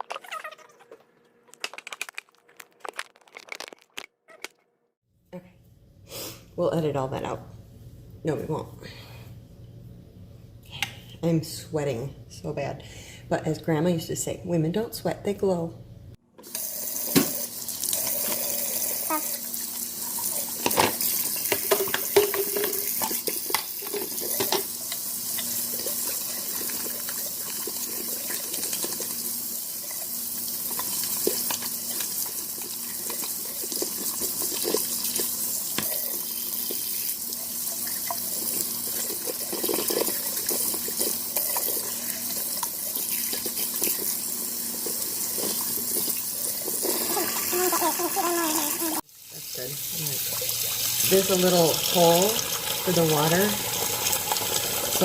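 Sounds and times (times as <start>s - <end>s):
tap running into sink: 17.0s - 17.5s.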